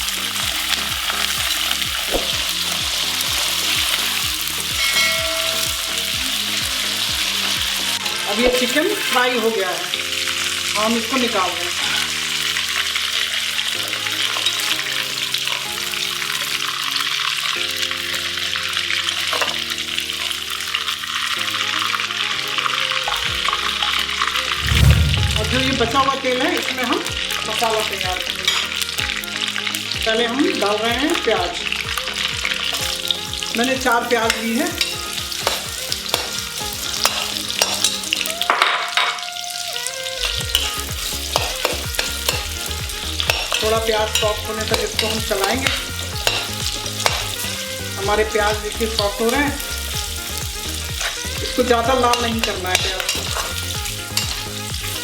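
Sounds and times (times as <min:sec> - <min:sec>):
chicken sizzling in hot oil: 0:00.0 - 0:55.0
soft background music: 0:00.0 - 0:55.0
spatula scraping pan: 0:32.7 - 0:38.2, 0:40.2 - 0:55.0.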